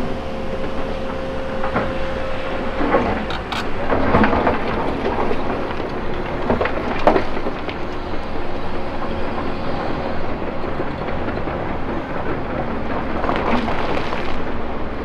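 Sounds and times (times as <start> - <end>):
steady whine: 0.0 - 10.9
excavator diesel engine running: 0.0 - 15.0.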